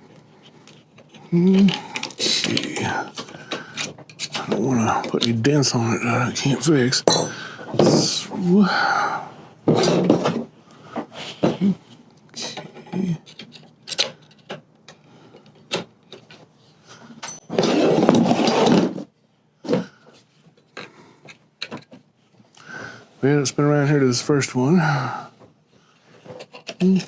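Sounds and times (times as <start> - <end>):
tools knocking on wood and metal: 7.0 - 8.1.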